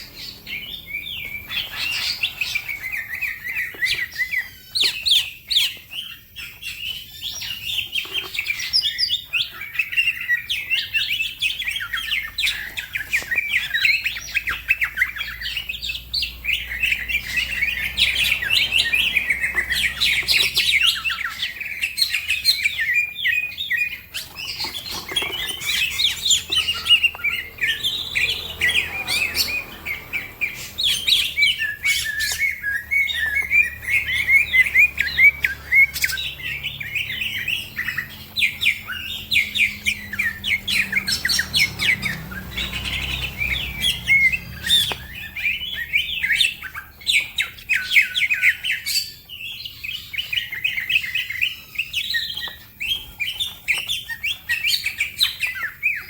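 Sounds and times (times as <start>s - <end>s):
bird singing chirps and warbles: 0.0s - 56.0s.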